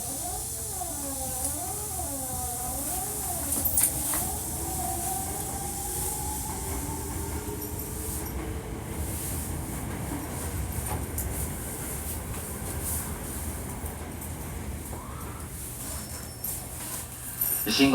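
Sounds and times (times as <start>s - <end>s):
electric train drive whine: 0.0s - 10.0s.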